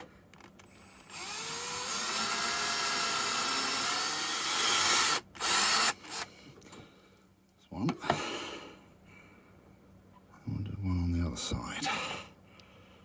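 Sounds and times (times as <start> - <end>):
electric drill whining: 0.6 - 6.3.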